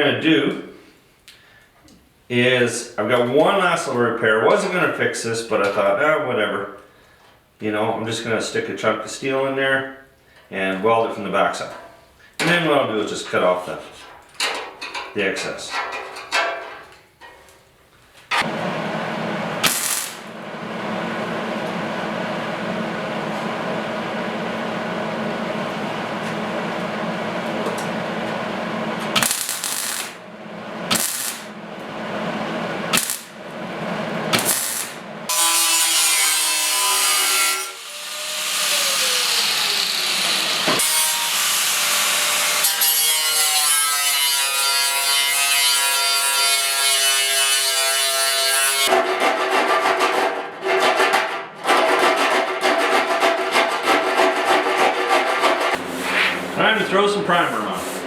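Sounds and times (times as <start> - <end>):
welder welding: 18.4 - 21.7, 27.6 - 48.9
grinder whining: 18.4 - 22.8, 25.4 - 30.3, 30.9 - 31.6, 32.5 - 33.4, 34.0 - 42.8.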